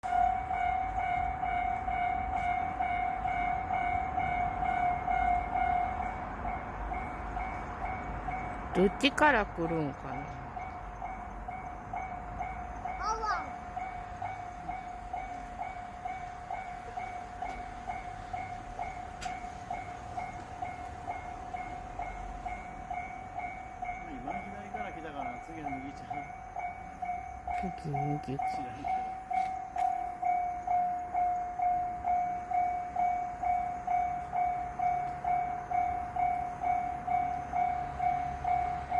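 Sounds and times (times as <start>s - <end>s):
level crossing alarm ringing: 0.1s - 38.9s
level crossing bell ringing: 22.5s - 38.8s.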